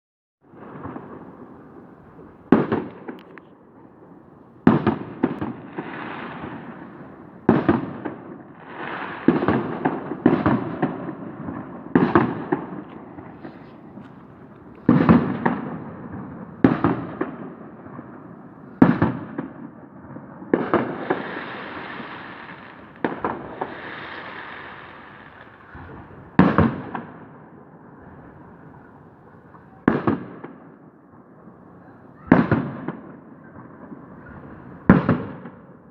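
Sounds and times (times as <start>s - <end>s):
firework crackling: 4.6s - 19.8s, 20.4s - 27.3s.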